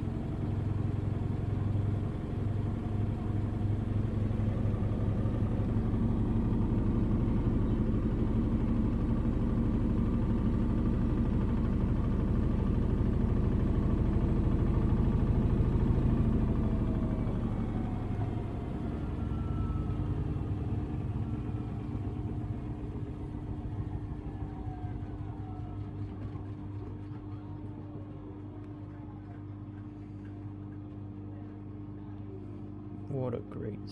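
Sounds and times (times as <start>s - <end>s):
washing machine spinning: 0.0s - 31.9s.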